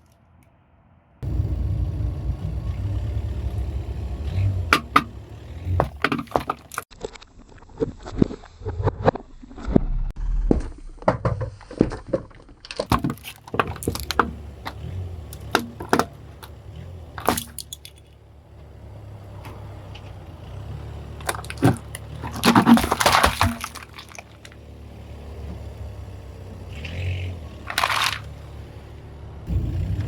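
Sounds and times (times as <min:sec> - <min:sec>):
car hum: 0:01.2 - 0:06.9, 0:12.7 - 0:30.0
tyre crushing brittle objects: 0:05.4 - 0:08.8, 0:11.0 - 0:18.1, 0:19.4 - 0:24.8, 0:26.8 - 0:28.4.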